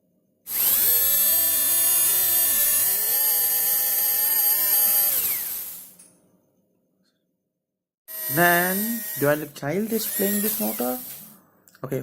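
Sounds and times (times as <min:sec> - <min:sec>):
small electric motor whining: 0:00.5 - 0:06.0, 0:08.1 - 0:11.3.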